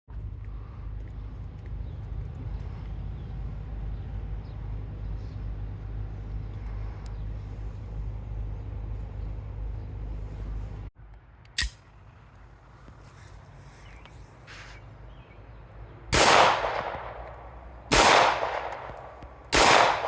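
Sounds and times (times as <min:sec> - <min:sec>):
low rumble: 0:00.1 - 0:10.9
pistol shot: 0:16.1 - 0:20.0.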